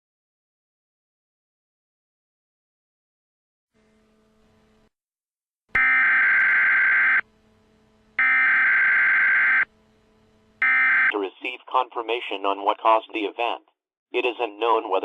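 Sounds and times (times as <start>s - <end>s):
harsh electronic buzzer: 5.8s - 11.2s
faint hum: 5.8s - 13.0s.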